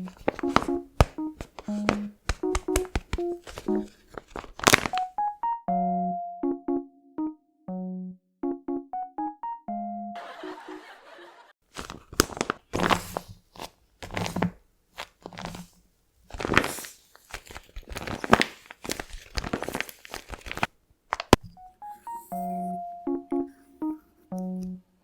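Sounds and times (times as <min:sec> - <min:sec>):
paper crinkling and crunching: 0:00.0 - 0:05.2, 0:11.7 - 0:21.3.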